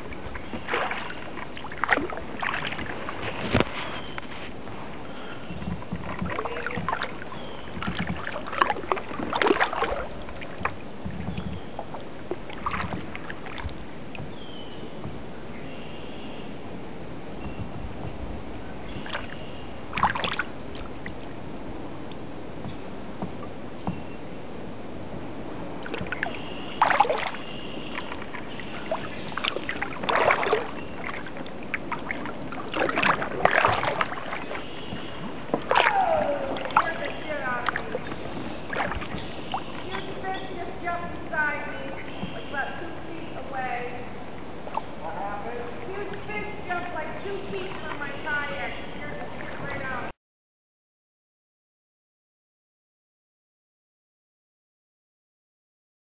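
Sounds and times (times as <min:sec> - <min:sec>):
kayak paddles splashing in water: 0:00.0 - 0:50.1
water dripping: 0:05.7 - 0:14.4, 0:25.8 - 0:42.8, 0:45.7 - 0:50.0.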